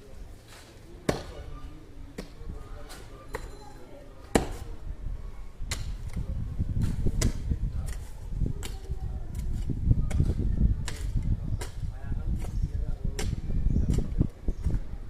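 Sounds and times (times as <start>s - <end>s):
sharp construction knocks: 4.3s - 4.6s.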